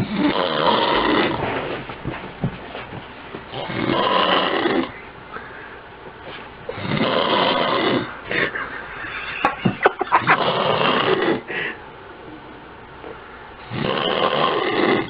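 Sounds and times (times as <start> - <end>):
person snoring loudly: 0.0 - 1.4, 3.5 - 5.0, 6.7 - 8.5, 10.2 - 11.5, 13.6 - 15.0.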